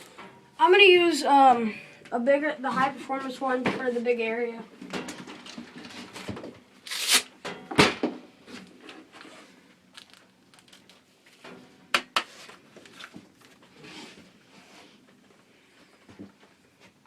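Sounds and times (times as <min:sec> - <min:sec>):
scratchy rasp of handled gear: 0:06.9 - 0:07.3.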